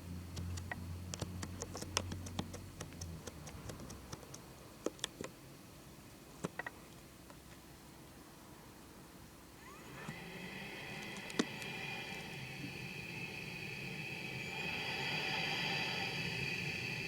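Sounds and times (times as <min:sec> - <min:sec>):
machine low hum: 0:09.1 - 0:17.0.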